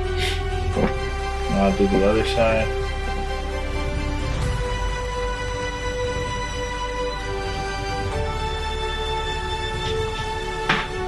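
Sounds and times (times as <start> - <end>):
low steady drone: 0.0 - 11.0
music with sustained notes: 0.0 - 11.0.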